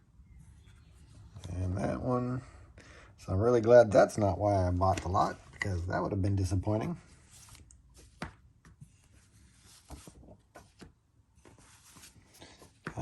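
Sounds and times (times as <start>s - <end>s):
paper rustling: 6.7s - 13.0s.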